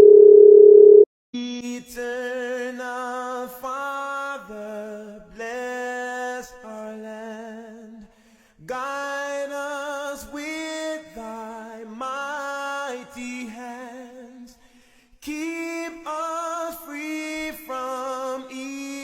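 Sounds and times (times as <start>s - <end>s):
person singing with vibrato: 1.4s - 7.8s.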